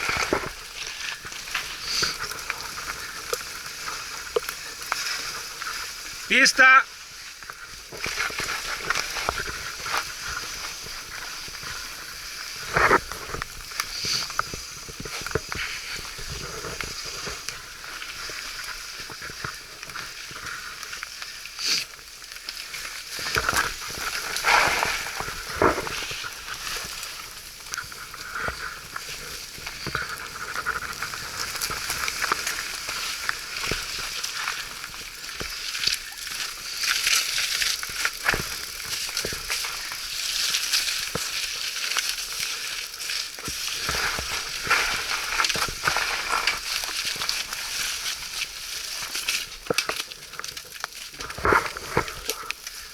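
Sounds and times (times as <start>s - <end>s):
tyres hissing through mud: 1.6s - 3.5s, 21.6s - 21.9s.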